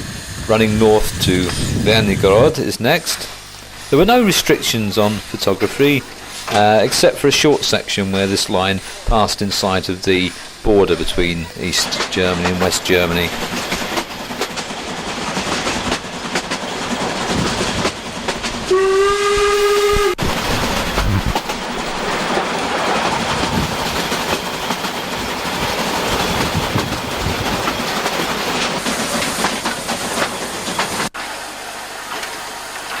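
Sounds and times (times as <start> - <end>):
train clatter and rumble: 0.0 - 33.0
steam train whistle blast: 18.7 - 20.2.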